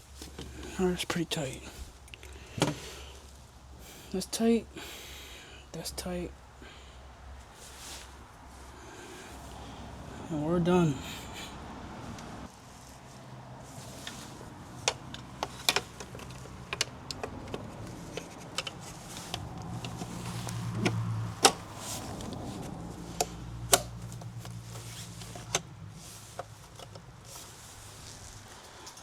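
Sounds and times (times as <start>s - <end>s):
tools clicking and knocking: 14.8s - 22.3s.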